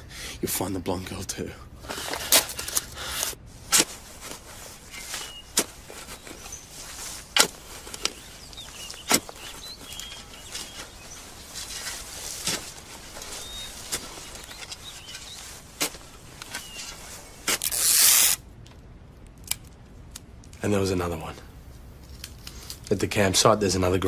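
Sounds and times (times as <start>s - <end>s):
faint bird chirps: 4.9s - 7.2s, 7.8s - 12.3s, 13.1s - 15.6s.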